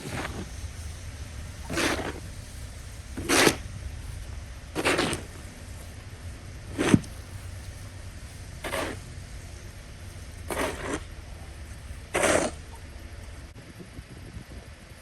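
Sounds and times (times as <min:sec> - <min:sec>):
snow shovel scraping: 0:00.0 - 0:04.2, 0:04.8 - 0:06.0, 0:06.6 - 0:12.8
steady low rumble: 0:00.0 - 0:15.0.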